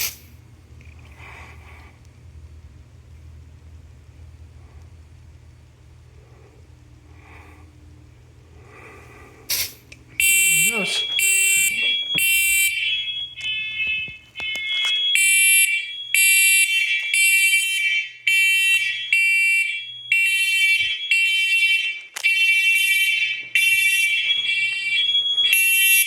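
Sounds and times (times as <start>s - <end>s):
smoke alarms beeping: 9.5s - 26.0s.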